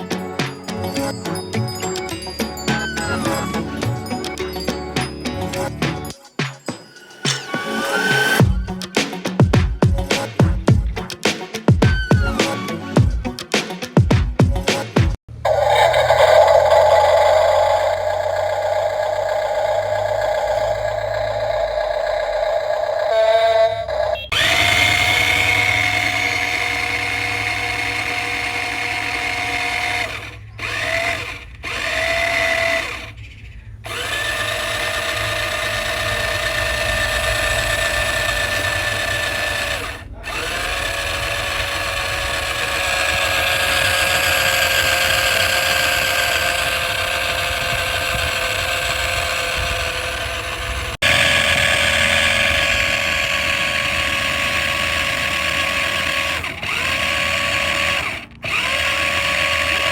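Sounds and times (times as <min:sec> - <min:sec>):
electric motor whine: 0:15.4 - 0:33.2, 0:33.9 - 0:59.9.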